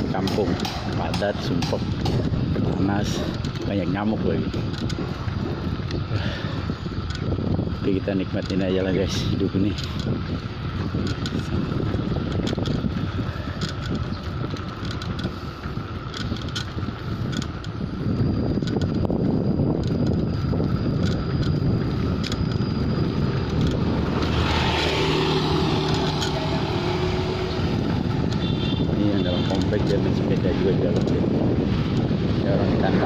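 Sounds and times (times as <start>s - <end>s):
wind rumbling on microphone: 0.0s - 33.0s
passing vehicle engine hum: 20.4s - 33.0s.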